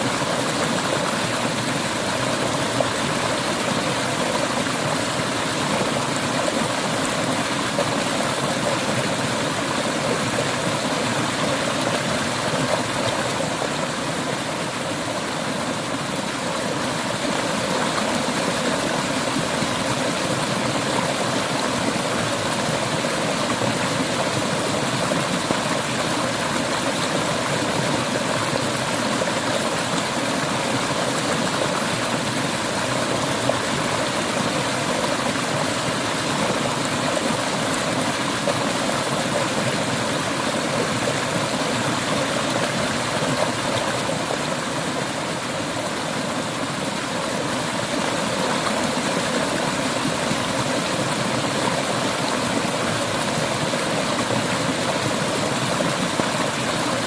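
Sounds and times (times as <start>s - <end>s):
river water flowing over rocks: 0.0s - 57.0s.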